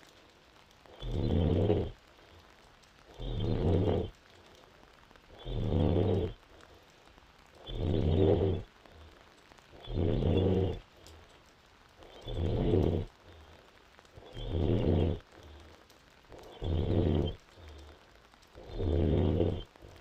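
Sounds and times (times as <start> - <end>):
soft breathing: 0.0 - 20.0
woman snoring: 7.7 - 8.6, 14.3 - 15.2, 16.4 - 17.4, 18.6 - 19.6.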